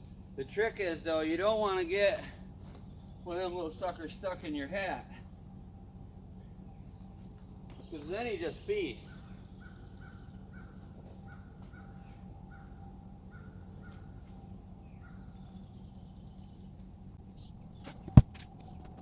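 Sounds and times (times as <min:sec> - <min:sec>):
faint steady hum: 0:00.0 - 0:19.0
bird calling: 0:06.3 - 0:19.0.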